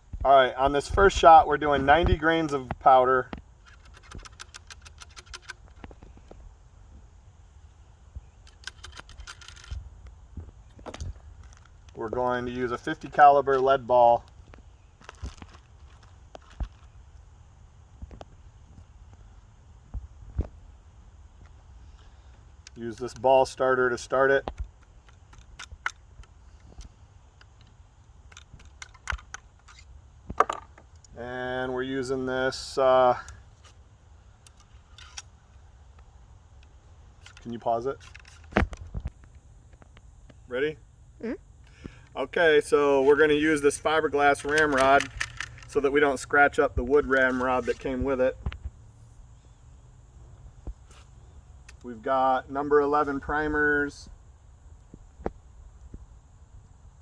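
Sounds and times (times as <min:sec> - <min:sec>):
small metallic clicks and rattles: 0:01.9 - 0:06.4, 0:08.4 - 0:17.3, 0:21.4 - 0:31.2, 0:33.1 - 0:40.0, 0:43.7 - 0:47.9.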